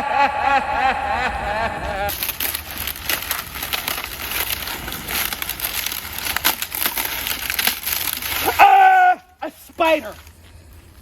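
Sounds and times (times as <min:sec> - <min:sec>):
person crying out: 0:00.0 - 0:02.1, 0:08.4 - 0:09.4
crackling crinkling noise: 0:00.6 - 0:11.0.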